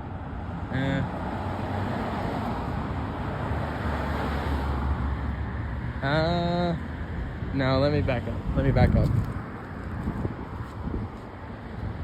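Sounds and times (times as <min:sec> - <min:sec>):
cars passing: 0:00.0 - 0:12.0
vehicle engine rumble: 0:05.0 - 0:12.0.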